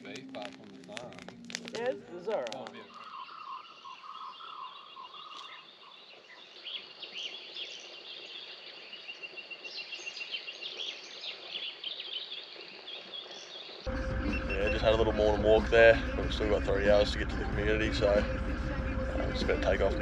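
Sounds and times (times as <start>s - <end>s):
high bird chirps: 2.8s - 15.4s
high pulsing bird trill: 13.9s - 20.0s.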